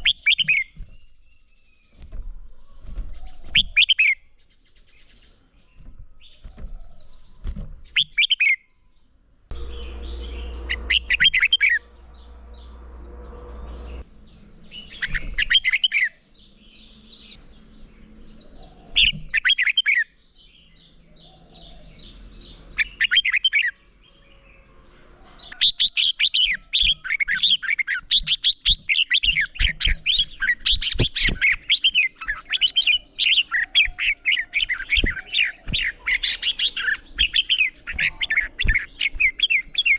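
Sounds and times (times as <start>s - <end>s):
birds singing warbled phrases: 0.0s - 39.9s.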